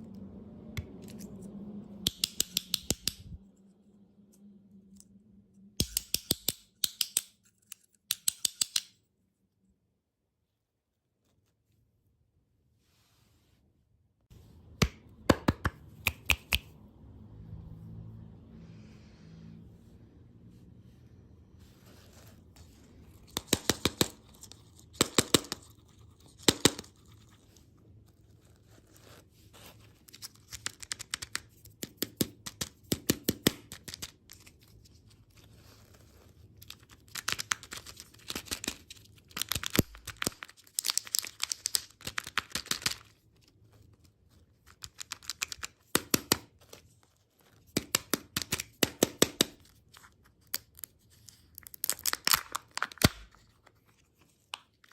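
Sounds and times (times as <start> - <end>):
candy wrapper crackling: 36.6 - 43.2, 44.6 - 46.4, 50.4 - 53.8.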